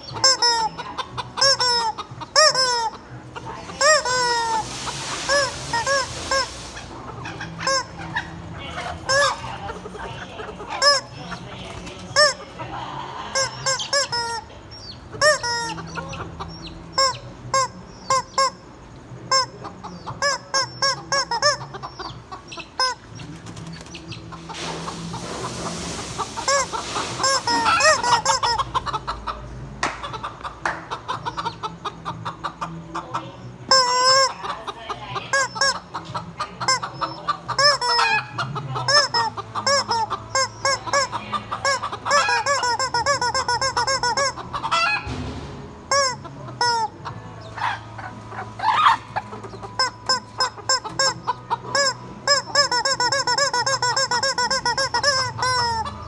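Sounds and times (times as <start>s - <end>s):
rubber chicken toy squawks: 0.0s - 12.5s, 13.2s - 23.2s, 25.9s - 29.4s, 30.9s - 45.2s, 45.9s - 56.0s
hens clucking: 0.0s - 56.0s
rushing noise: 4.0s - 7.0s, 24.5s - 28.2s.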